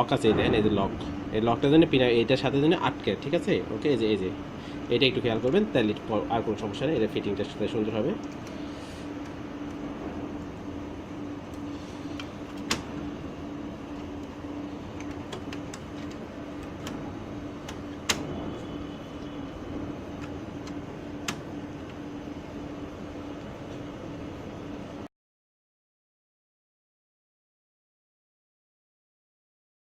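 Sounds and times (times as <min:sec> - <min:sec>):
steady background hum: 0:00.0 - 0:25.1
printer parts clicking: 0:11.5 - 0:13.1, 0:13.9 - 0:19.3, 0:20.0 - 0:22.0.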